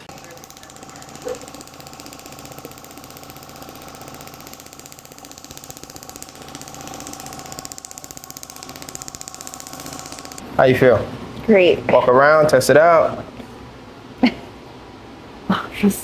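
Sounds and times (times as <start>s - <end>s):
small motor buzzing: 0.0s - 13.6s.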